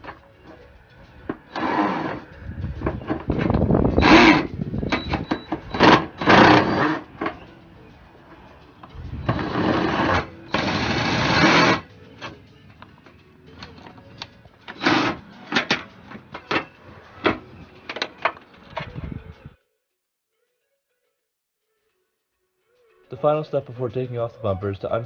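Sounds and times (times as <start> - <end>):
power tool running: 1.5 - 2.3, 4.0 - 4.5, 5.2 - 7.3, 9.3 - 11.9, 14.7 - 15.2
tools and metal parts clicking: 12.2 - 16.8.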